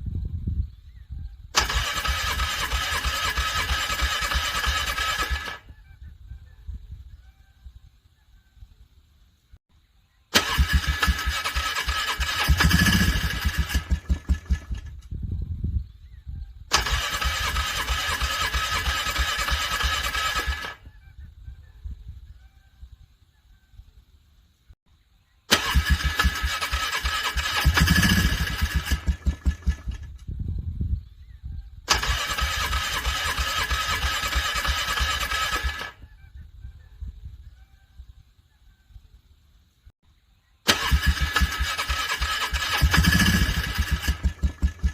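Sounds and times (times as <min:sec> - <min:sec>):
engine cranking on starter: 0:01.6 - 0:05.6, 0:10.3 - 0:15.1, 0:16.7 - 0:20.8, 0:25.5 - 0:30.3, 0:31.9 - 0:36.0, 0:40.7 - 0:44.9.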